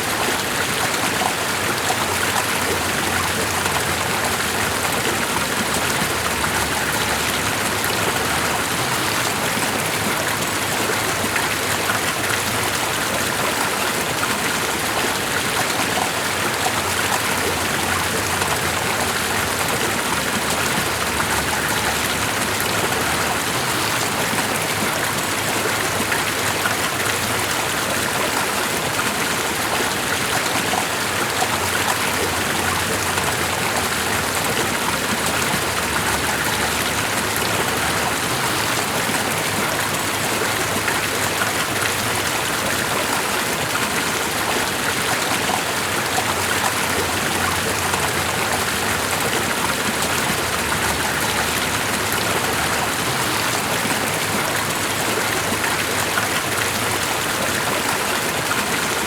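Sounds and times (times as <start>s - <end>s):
running water: 0.0s - 59.0s.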